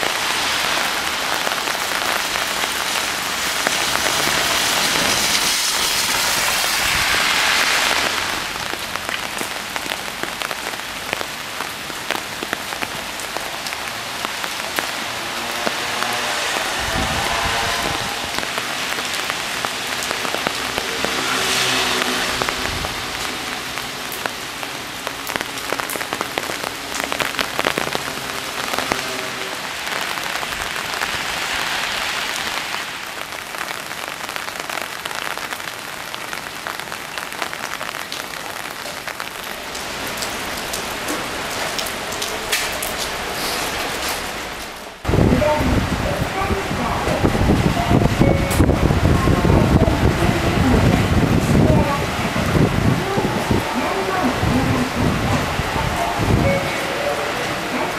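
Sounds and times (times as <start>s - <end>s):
heavy rain pouring: 0.0s - 57.9s
raindrops ticking and pattering: 0.0s - 57.9s.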